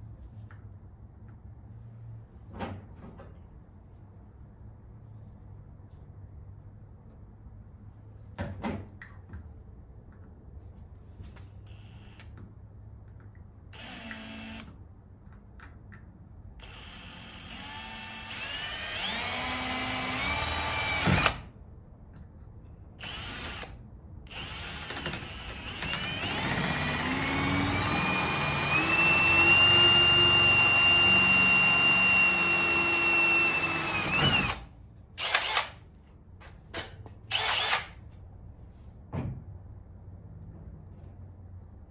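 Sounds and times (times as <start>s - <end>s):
electric drill boring into metal: 13.8s - 14.7s, 16.6s - 21.4s, 23.0s - 23.7s, 24.3s - 34.6s, 35.2s - 35.7s, 37.3s - 37.9s.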